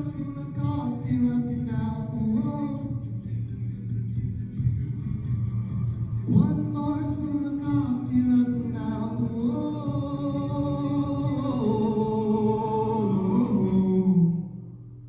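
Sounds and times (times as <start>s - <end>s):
a cappella group singing chords: 7.9s - 14.6s.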